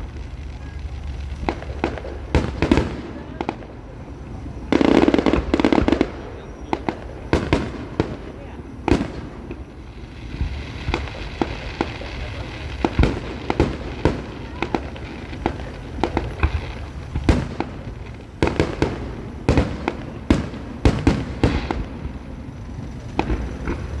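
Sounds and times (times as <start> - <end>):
continuous low rumble: 0.0 - 24.0
fireworks bursting with loud bangs: 0.0 - 24.0.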